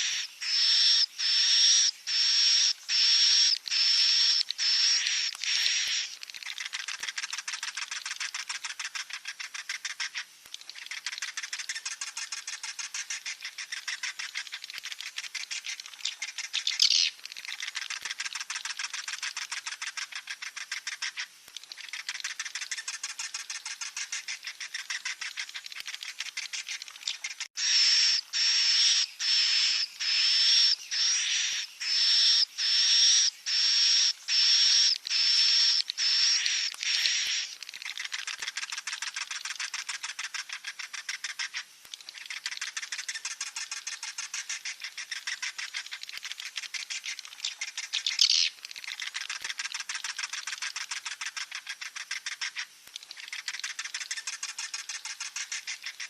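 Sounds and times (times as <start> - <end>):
bird chicks buzzy calls: 0.0 - 41.6
bird chicks chittering: 0.0 - 56.0.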